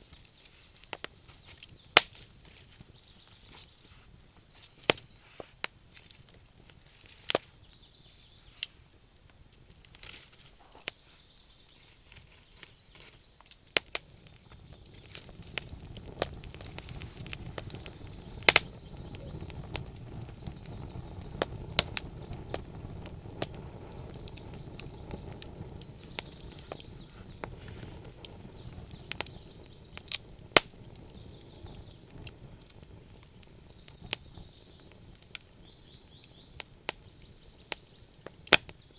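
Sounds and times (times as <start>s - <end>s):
low rush of burning: 0.0s - 38.9s
wood fire crackling and popping: 0.0s - 38.9s.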